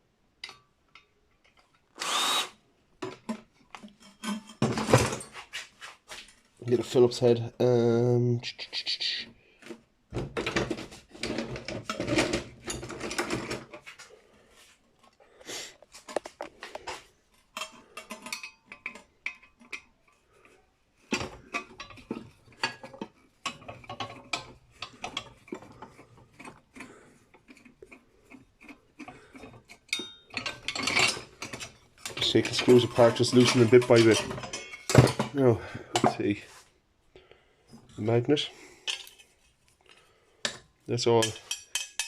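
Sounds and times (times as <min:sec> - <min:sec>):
screwdriver clicking and scraping metal: 0:00.4 - 0:02.6, 0:15.9 - 0:20.2, 0:21.1 - 0:35.0, 0:41.2 - 0:42.0.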